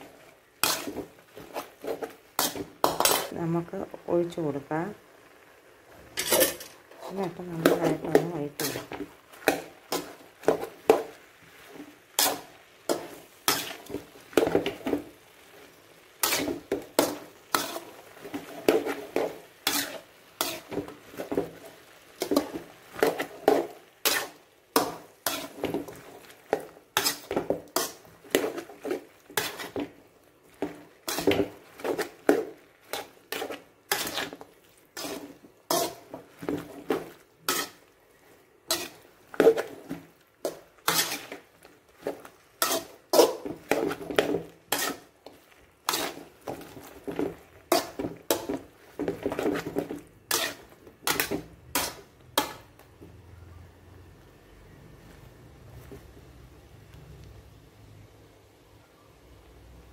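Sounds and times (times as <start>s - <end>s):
spoon scraping a cooking pan: 0.0s - 3.6s, 6.0s - 53.0s.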